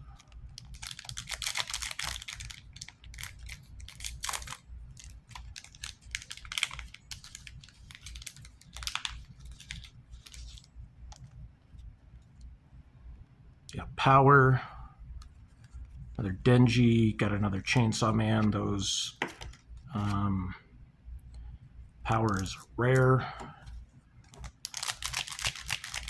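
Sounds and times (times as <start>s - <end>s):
cards and wrapper rustling: 0.2s - 11.2s, 22.1s - 26.0s.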